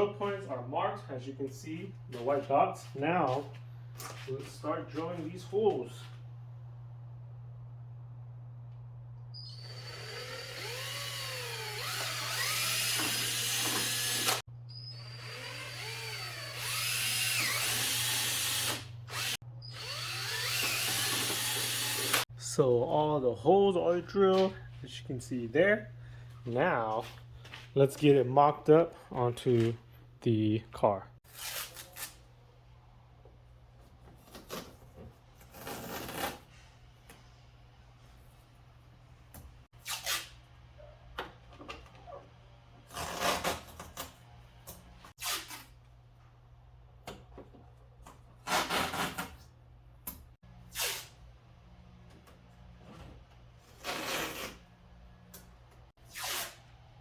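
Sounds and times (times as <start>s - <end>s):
power drill whining: 9.4s - 22.2s
steady low hum: 22.3s - 31.2s.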